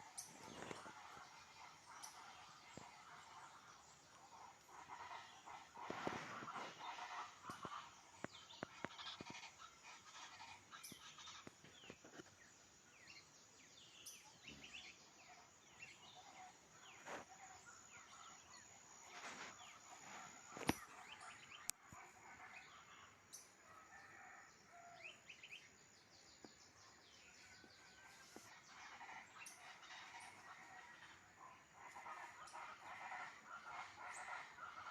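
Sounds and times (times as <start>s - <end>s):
birds chirping and calling: 0.0s - 12.4s, 26.3s - 34.9s.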